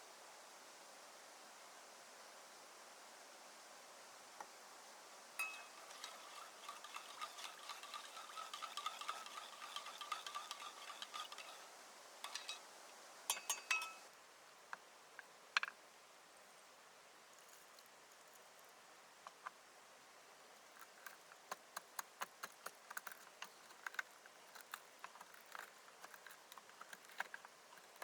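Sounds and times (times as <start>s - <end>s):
clinks of metal on metal: 5.4s - 11.6s, 12.3s - 12.6s, 13.3s - 14.1s
spoon stirring in metal bowl: 5.4s - 12.6s, 13.3s - 14.1s, 20.8s - 28.0s.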